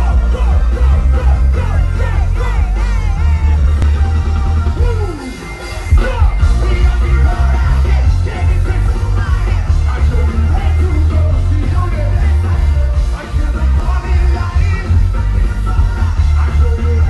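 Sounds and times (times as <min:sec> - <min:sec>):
music with heavy bass beat: 0:00.0 - 0:17.0
person singing: 0:04.8 - 0:17.0.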